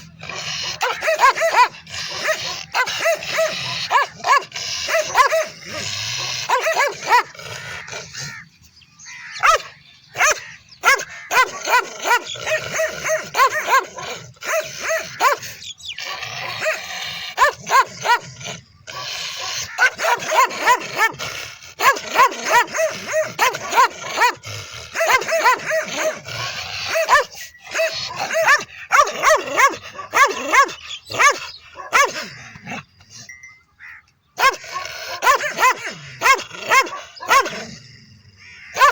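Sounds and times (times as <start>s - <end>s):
dog barking: 0.7s - 5.6s, 6.4s - 7.3s, 9.4s - 15.5s, 17.4s - 18.2s, 19.4s - 21.2s, 21.8s - 26.2s, 26.8s - 32.4s, 34.4s - 37.7s.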